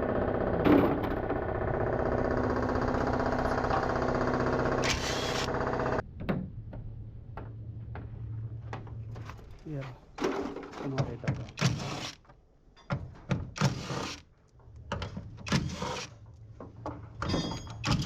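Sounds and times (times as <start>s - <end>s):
engine running: 0.0s - 6.0s
low hum: 0.0s - 9.7s.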